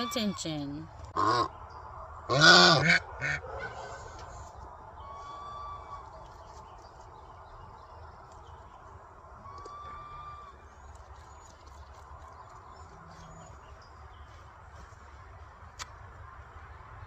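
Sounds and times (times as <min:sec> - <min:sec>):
goose honking: 0:02.3 - 0:04.3, 0:09.4 - 0:10.6.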